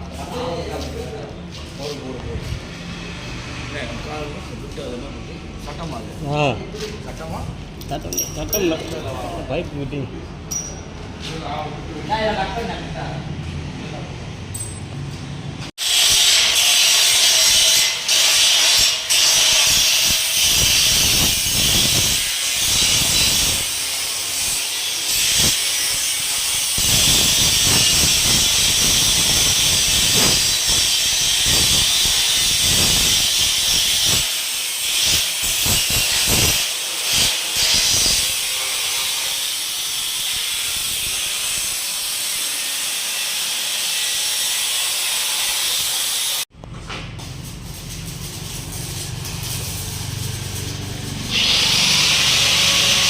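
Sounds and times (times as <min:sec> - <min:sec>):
welding arc hissing: 0:15.8 - 0:46.5, 0:47.4 - 0:53.0.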